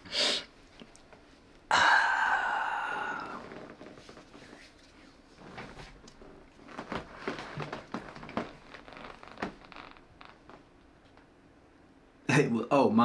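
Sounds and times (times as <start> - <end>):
person shuffling: 3.4 - 9.8.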